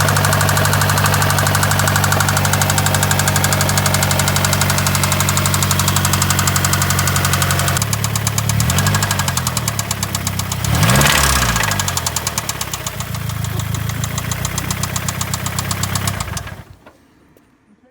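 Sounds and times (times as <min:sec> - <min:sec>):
rapid engine knocking: 0:00.0 - 0:16.7
car engine idling and revving: 0:00.0 - 0:16.9.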